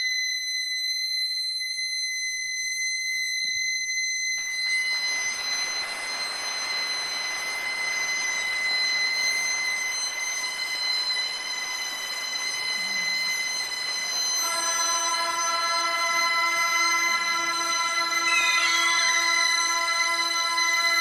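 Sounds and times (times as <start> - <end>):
suona long high note: 6.3 - 21.0.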